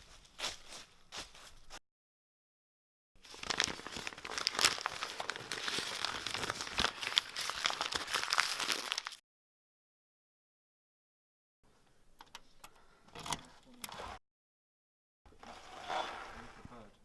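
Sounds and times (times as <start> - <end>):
crumpling and crinkling: 3.2 - 9.2.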